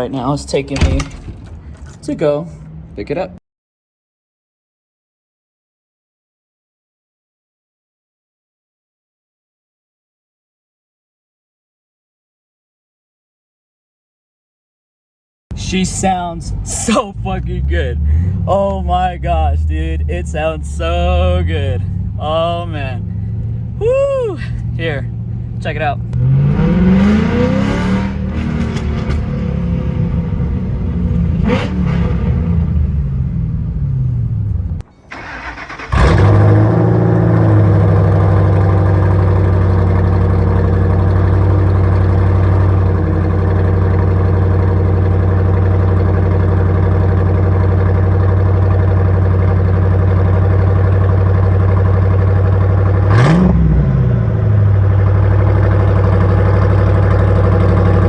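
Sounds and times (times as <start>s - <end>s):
car engine revving and idling: 15.6s - 58.0s.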